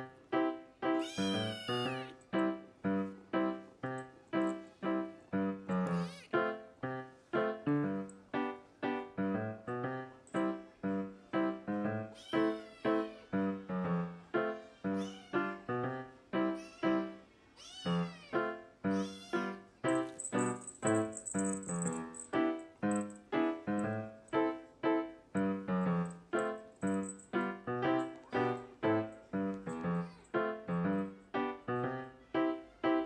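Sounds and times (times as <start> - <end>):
kitten meowing: 1.0 - 2.2, 5.7 - 6.6, 12.1 - 13.3, 14.7 - 15.7, 16.5 - 20.1, 29.6 - 30.4.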